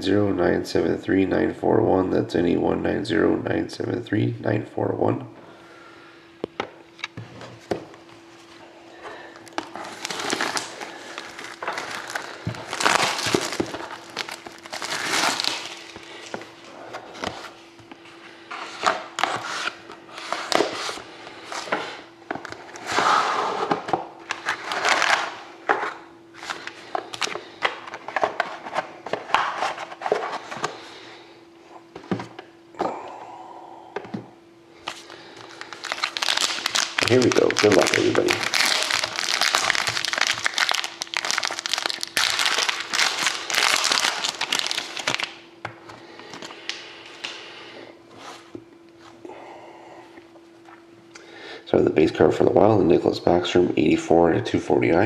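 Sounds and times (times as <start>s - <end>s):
faint steady hum: 0.0s - 55.0s
plastic wrap crinkling and tearing: 9.4s - 16.4s, 24.3s - 25.4s, 34.9s - 45.4s.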